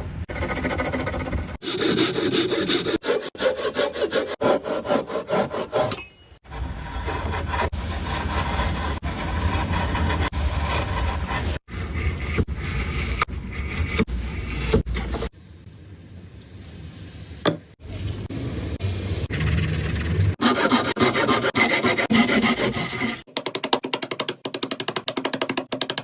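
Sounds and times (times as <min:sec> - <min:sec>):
wood being sawn: 0:00.4 - 0:05.9, 0:06.5 - 0:14.9, 0:20.4 - 0:23.2.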